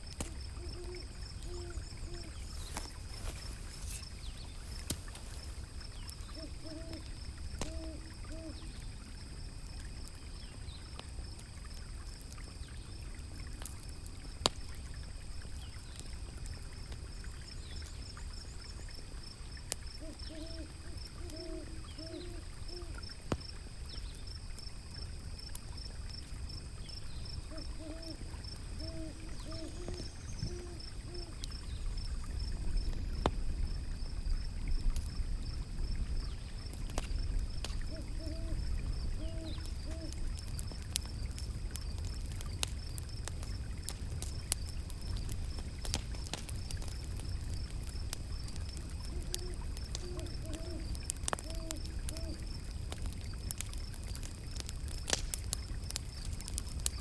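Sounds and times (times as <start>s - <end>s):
river water rumbling: 0.0s - 19.7s, 20.6s - 56.9s
wood fire crackling: 0.0s - 57.0s
owl hooting: 0.6s - 4.0s, 6.2s - 8.7s, 20.0s - 23.0s, 27.5s - 31.4s, 37.9s - 38.6s, 39.2s - 40.2s, 49.1s - 52.4s.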